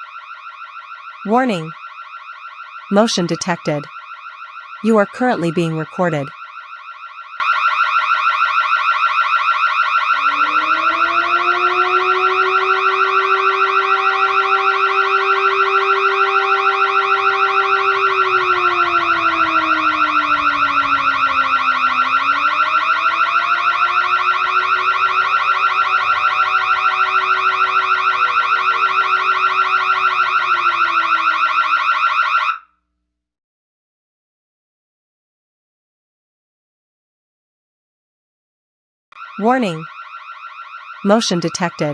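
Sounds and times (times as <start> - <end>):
burglar alarm pulsing high tone: 0.0 - 32.6, 39.2 - 41.9
low alarm tone sagging in pitch: 9.1 - 32.4.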